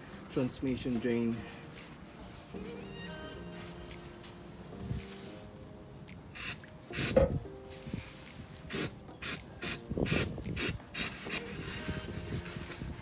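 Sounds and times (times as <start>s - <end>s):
aerosol spray hissing bursts: 6.4s - 7.2s, 8.7s - 11.4s.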